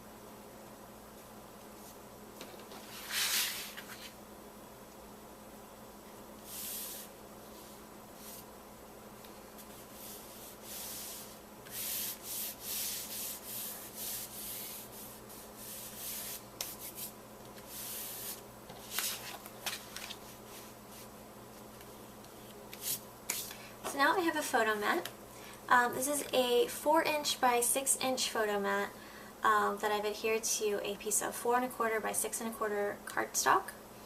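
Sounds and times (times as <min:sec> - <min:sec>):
paper rubbing and sliding: 0:02.7 - 0:04.2, 0:09.6 - 0:21.1.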